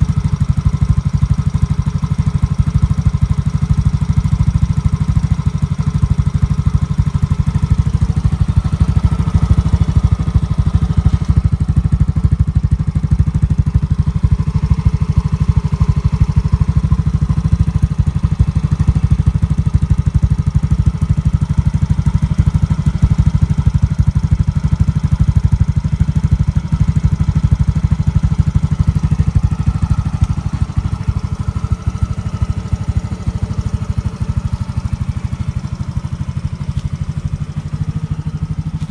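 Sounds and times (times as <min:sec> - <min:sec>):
scooter engine idling: 0:00.0 - 0:38.9.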